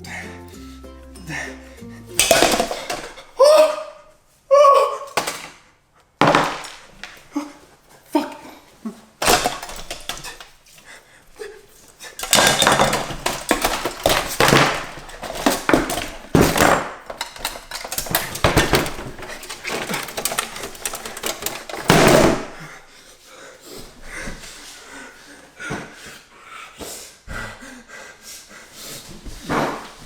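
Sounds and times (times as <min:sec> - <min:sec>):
hard objects clattering: 0:02.1 - 0:04.0, 0:05.1 - 0:05.6, 0:06.2 - 0:07.4, 0:09.2 - 0:10.9, 0:11.8 - 0:22.6.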